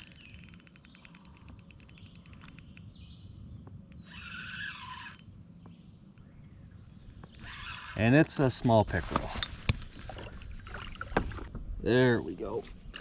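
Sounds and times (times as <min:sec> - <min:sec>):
fishing reel clicking: 0:00.0 - 0:02.9, 0:03.9 - 0:05.3, 0:07.3 - 0:08.6.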